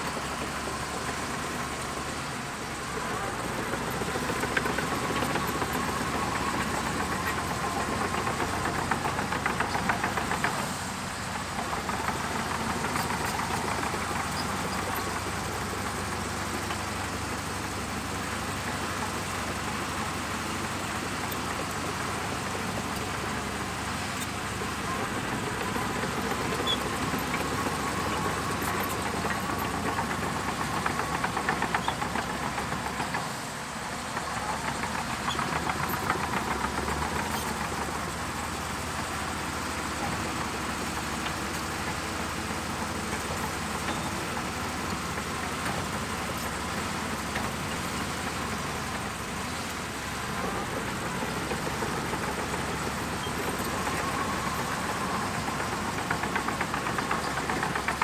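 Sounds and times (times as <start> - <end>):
bulldozer diesel engine running: 0.0 - 58.0.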